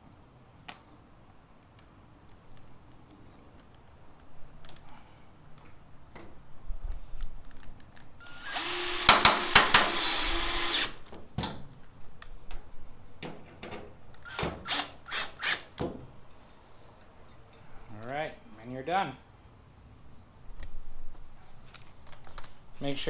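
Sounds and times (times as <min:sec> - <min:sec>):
cordless drill driving a screw: 0:08.2 - 0:11.0
sharp drill clicks: 0:08.2 - 0:11.0.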